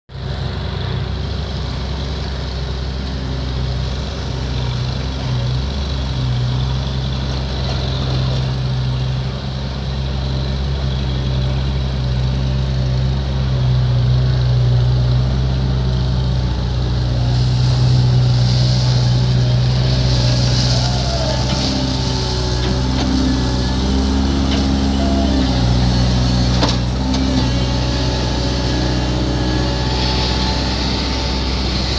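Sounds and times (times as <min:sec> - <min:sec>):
diesel engine running: 0:00.1 - 0:31.9
high hiss: 0:17.0 - 0:25.1.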